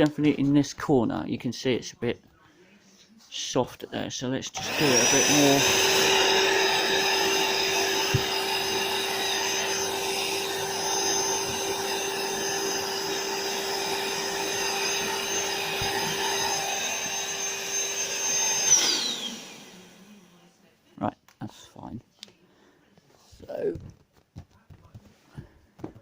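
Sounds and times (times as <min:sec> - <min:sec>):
electric air pump whining: 0:04.6 - 0:20.3.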